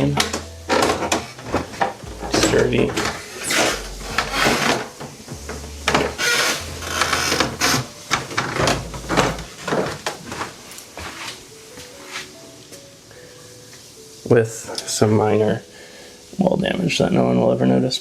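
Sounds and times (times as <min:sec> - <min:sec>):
heavy low thumps: 0:02.0 - 0:04.6, 0:05.3 - 0:07.7, 0:08.6 - 0:09.5.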